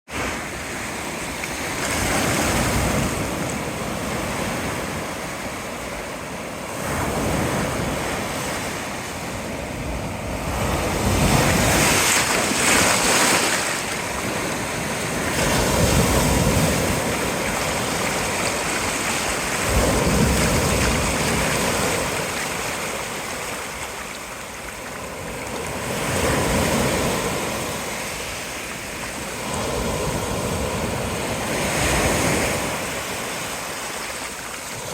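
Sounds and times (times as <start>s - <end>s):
surf breaking on shore: 0.1s - 34.9s
wind buffeting microphone: 6.8s - 28.3s.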